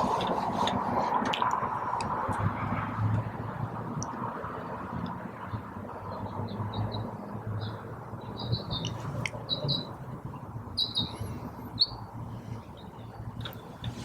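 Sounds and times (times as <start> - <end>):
small birds chirping: 5.5 - 14.0.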